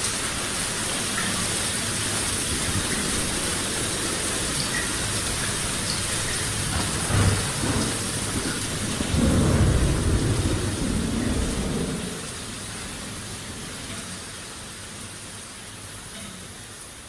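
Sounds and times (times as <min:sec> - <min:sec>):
rain hissing: 0:00.0 - 0:17.0
thunder rumbling: 0:01.8 - 0:13.7.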